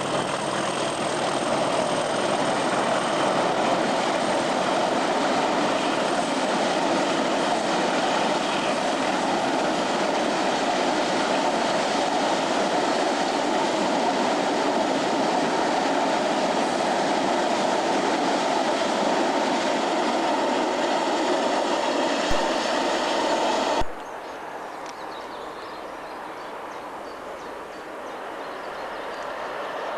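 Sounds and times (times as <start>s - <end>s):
train wheels on rail: 0.0s - 24.1s.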